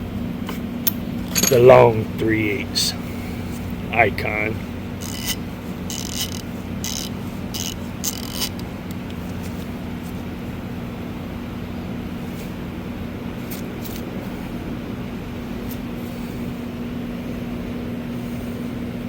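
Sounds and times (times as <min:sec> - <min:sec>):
steady low hum: 0:00.0 - 0:19.0
ratchet pawl clicking: 0:05.0 - 0:08.6.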